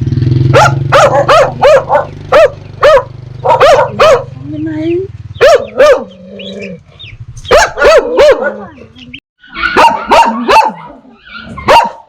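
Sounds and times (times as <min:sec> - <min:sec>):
dog barking: 0:00.5 - 0:04.4, 0:05.4 - 0:06.2, 0:07.5 - 0:08.8, 0:09.5 - 0:12.0.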